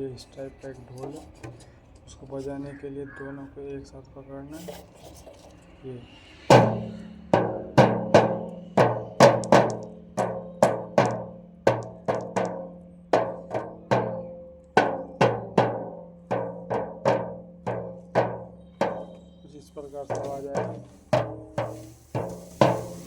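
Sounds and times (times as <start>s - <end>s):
drum beaten with sticks: 6.5s - 23.0s.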